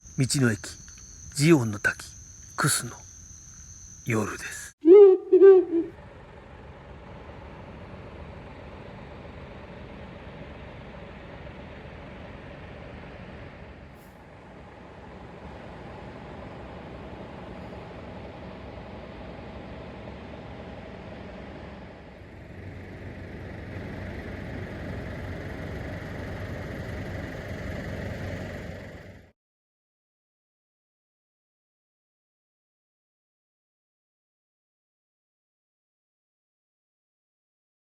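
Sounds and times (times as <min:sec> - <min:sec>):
vehicle engine idling: 0:05.4 - 0:29.3.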